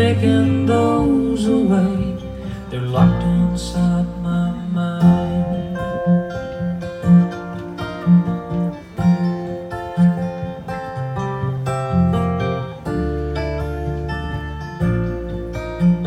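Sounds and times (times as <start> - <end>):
bass line: 0.0 - 16.0
strummed acoustic guitar: 0.0 - 16.0.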